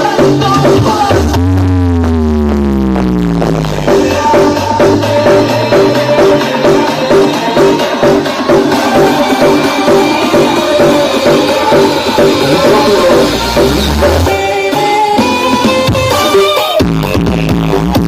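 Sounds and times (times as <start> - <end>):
loud music with drum beat: 0.0 - 18.0
deep bass swell: 0.6 - 7.8, 11.0 - 14.6.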